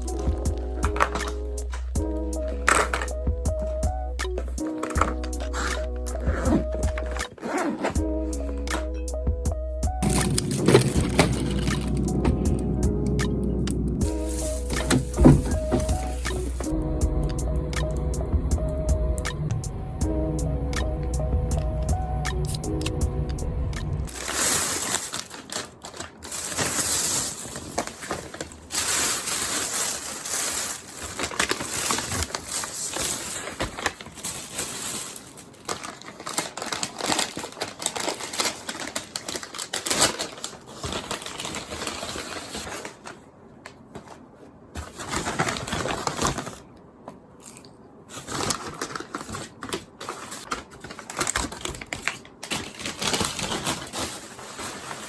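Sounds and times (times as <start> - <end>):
close rustling and crinkling: 0.0 - 8.8, 14.0 - 16.7, 24.1 - 55.0.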